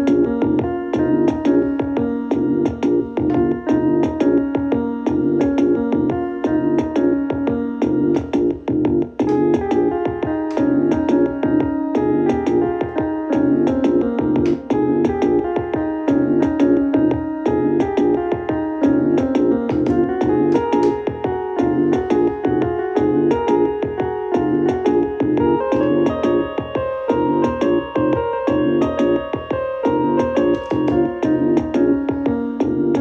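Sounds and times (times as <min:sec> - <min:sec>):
piano-like keyboard quick run: 0:00.0 - 0:33.0.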